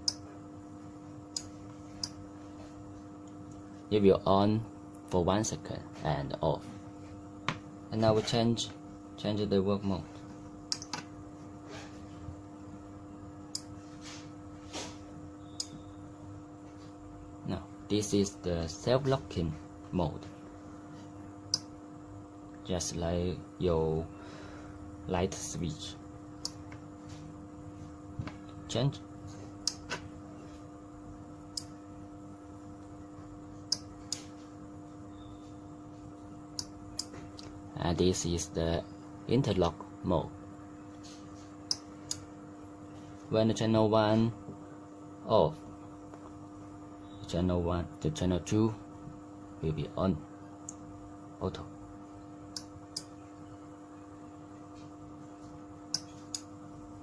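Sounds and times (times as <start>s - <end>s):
low electrical hum: 0.0s - 57.0s
relay switch clicks: 10.7s - 11.1s.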